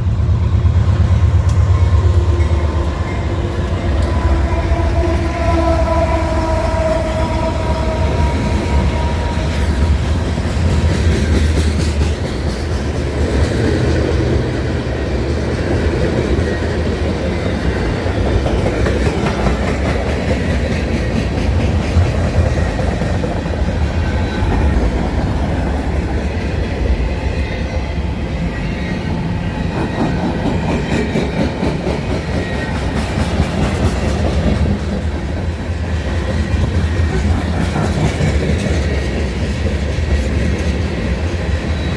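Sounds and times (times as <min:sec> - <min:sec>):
wheels clacking on rails: 0:00.0 - 0:28.2, 0:28.8 - 0:41.9
train cars rumbling past: 0:00.0 - 0:41.9
locomotive horn chord: 0:03.4 - 0:09.9.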